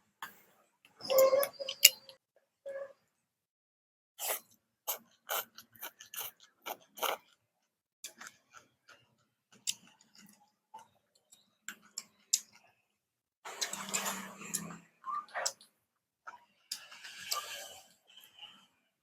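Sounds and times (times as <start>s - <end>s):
person chewing: 4.2s - 7.4s.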